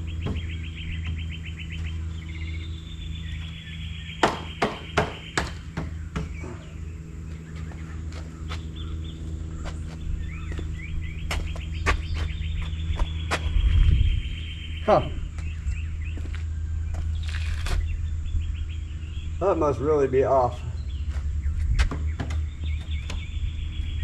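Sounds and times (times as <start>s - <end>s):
birds chirping in trills: 0.0s - 24.0s
steady low hum: 0.0s - 24.0s
sharp knocks: 4.2s - 6.6s.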